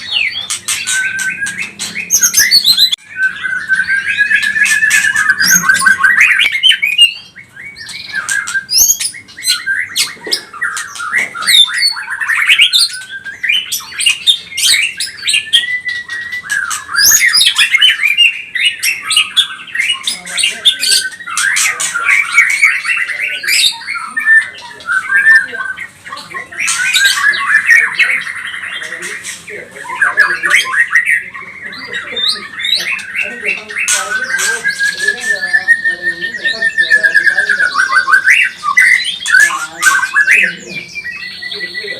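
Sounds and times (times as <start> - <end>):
buzzy rattling bird trill: 0.0 - 3.0
songbird whistling and chattering: 0.0 - 41.9.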